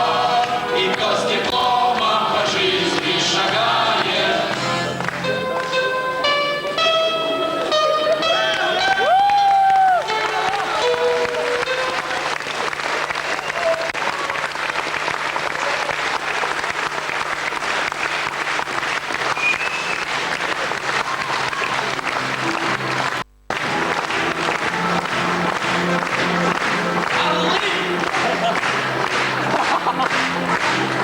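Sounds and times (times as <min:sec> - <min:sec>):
audience applauding: 0:00.0 - 0:05.8, 0:07.6 - 0:31.0
rhythmic beat: 0:00.0 - 0:05.8, 0:20.2 - 0:31.0
music: 0:00.0 - 0:13.2, 0:20.0 - 0:31.0.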